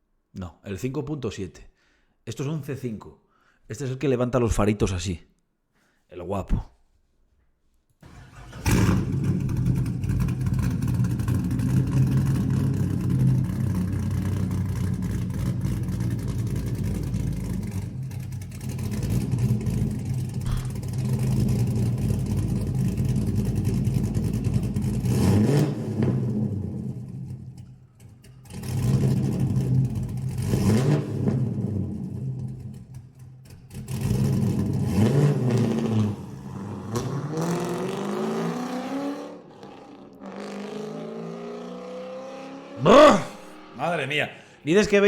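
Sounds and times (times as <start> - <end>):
car engine idling: 8.0 - 25.1, 25.7 - 30.5, 31.2 - 35.5
car engine revving: 8.0 - 44.2.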